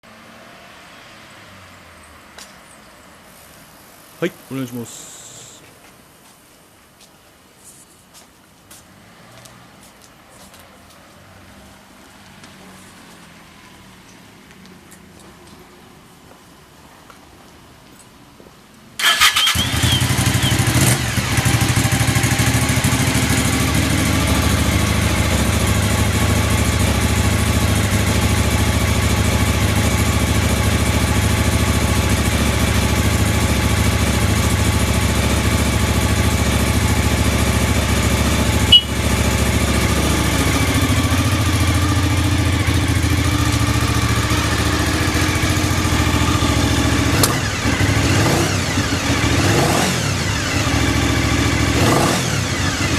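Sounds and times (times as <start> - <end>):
motorcycle engine idling: 19.0 - 52.9.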